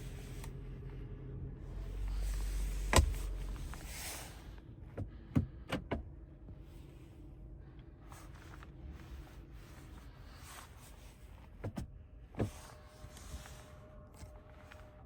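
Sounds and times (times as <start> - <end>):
car road and cabin noise: 0.0 - 15.0.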